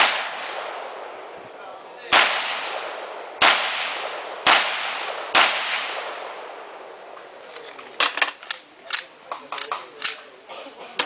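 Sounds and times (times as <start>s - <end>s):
gunshots echoing: 0.0s - 1.4s, 2.0s - 6.9s.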